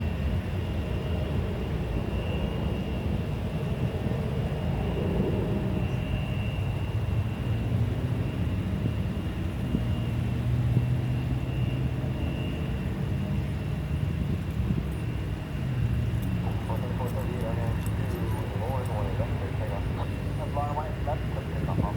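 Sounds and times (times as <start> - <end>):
jet engines low rumble: 0.0 - 21.9
faint high whine: 4.5 - 21.9.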